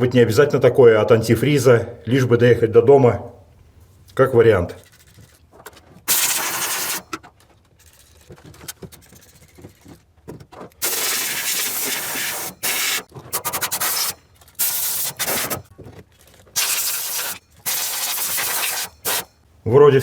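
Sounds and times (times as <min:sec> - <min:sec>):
faint rubbing and scraping: 0:04.7 - 0:06.1
aerosol spray hissing: 0:06.1 - 0:07.0, 0:10.8 - 0:15.6, 0:16.6 - 0:19.3.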